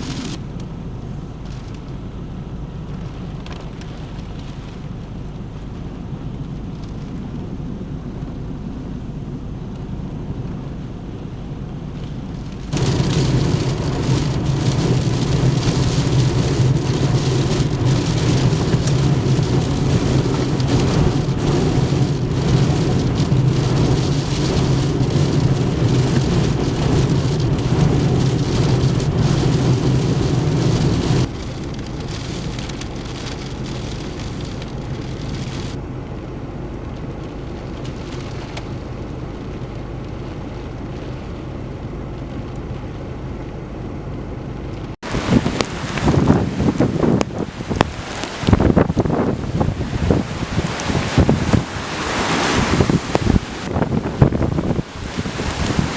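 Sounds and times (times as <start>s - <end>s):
heavy rain pouring: 0.0s - 0.4s, 11.8s - 35.8s, 36.9s - 41.4s, 45.0s - 55.9s
steady low rumble: 0.0s - 52.1s, 52.7s - 55.9s.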